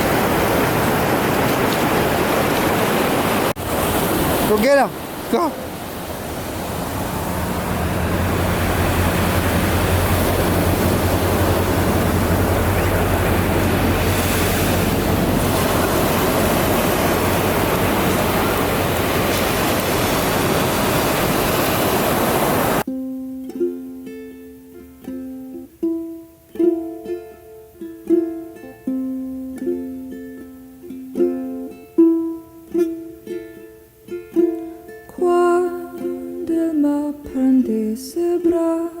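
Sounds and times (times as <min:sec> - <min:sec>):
ocean surf rushing: 0:00.0 - 0:22.9
gentle plucked-string music: 0:22.8 - 0:39.0.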